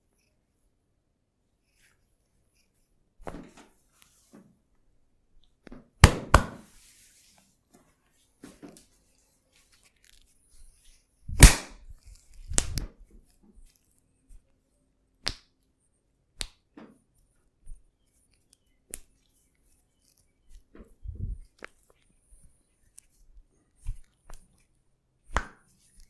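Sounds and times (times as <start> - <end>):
loud massage cracks: 11.4 - 11.8, 12.5 - 12.9.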